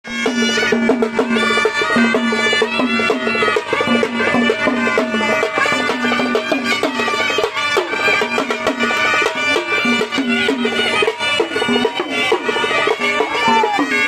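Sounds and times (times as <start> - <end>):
drums played with sticks: 0.0 - 14.0
sustained melody instrument: 0.1 - 14.0.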